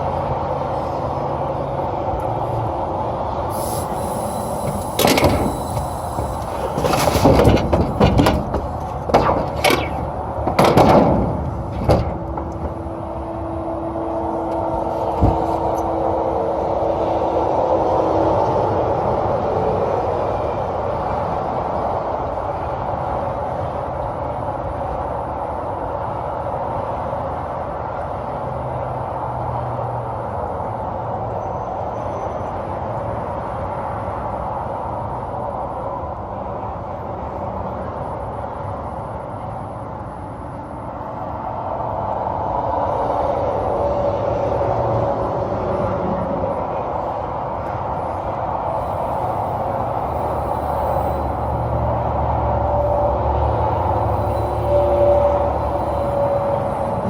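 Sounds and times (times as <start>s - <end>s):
gas hissing through hoses: 3.5s - 8.1s, 48.7s - 52.4s, 53.6s - 57.0s.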